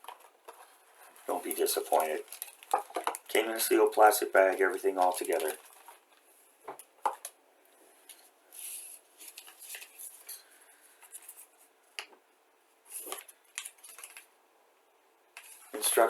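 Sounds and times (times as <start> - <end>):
plastic bag and paper rustling: 0.0 - 6.4, 8.1 - 11.5, 12.9 - 14.3.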